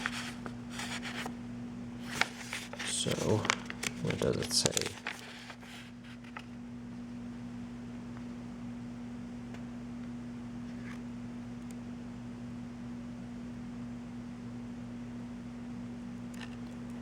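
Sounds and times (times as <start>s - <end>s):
paper rustling: 0.0s - 1.3s, 2.0s - 6.5s
low electrical hum: 0.0s - 17.0s.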